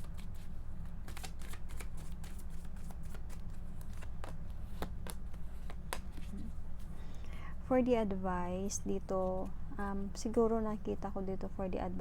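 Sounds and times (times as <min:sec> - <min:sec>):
cards being shuffled: 0:00.0 - 0:07.0
steady low hum: 0:00.0 - 0:12.0.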